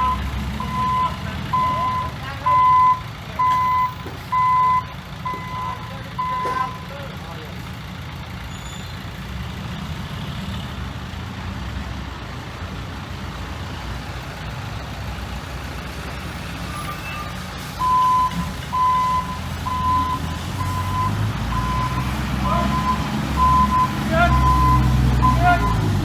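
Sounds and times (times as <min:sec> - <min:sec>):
reversing alarm beeping: 0:00.0 - 0:07.0, 0:16.6 - 0:26.0
heavy diesel machinery rumbling: 0:00.0 - 0:26.0.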